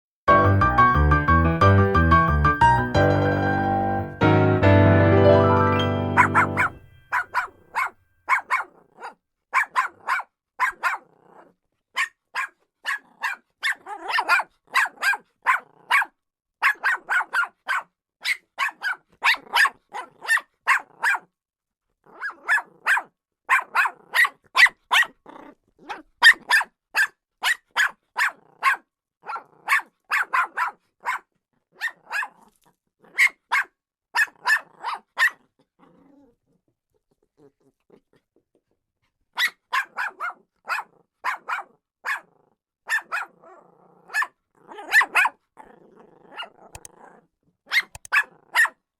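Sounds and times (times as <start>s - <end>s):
dog barking rapidly: 6.2s - 11.1s, 12.0s - 21.3s, 22.2s - 25.1s, 26.2s - 32.3s, 33.2s - 35.4s, 39.4s - 42.3s, 42.9s - 43.4s, 44.1s - 44.3s, 44.9s - 45.4s, 47.7s - 48.8s.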